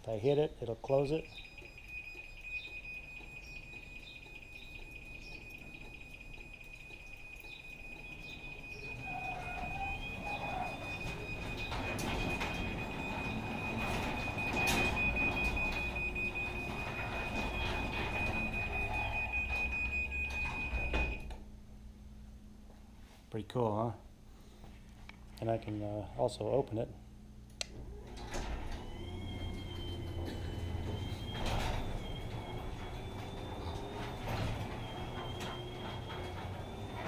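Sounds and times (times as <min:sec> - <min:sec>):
high-pitched warning beep: 0:00.9 - 0:21.3
garage door opener running: 0:00.9 - 0:21.5, 0:27.7 - 0:37.0
door rollers rumbling and rattling: 0:02.6 - 0:21.4, 0:27.8 - 0:37.0.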